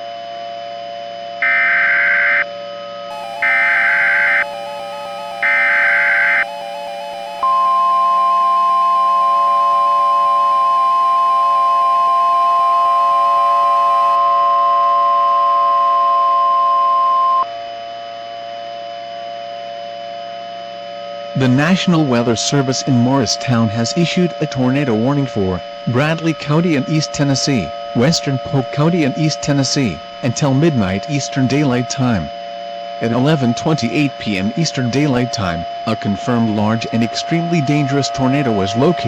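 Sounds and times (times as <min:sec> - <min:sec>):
steady electronic hum: 0:01.2 - 0:17.4, 0:21.4 - 0:39.0
harsh digital data bursts: 0:03.1 - 0:14.2
steady alert tone: 0:03.1 - 0:14.2.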